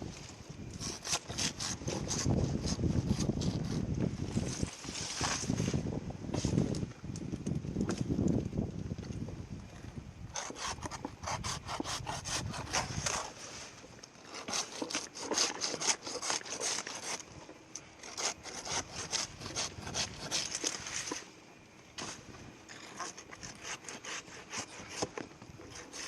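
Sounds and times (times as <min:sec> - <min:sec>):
hand saw cutting through palm: 0:00.8 - 0:05.8, 0:10.3 - 0:13.6, 0:14.2 - 0:17.3, 0:18.0 - 0:21.2, 0:22.0 - 0:26.0.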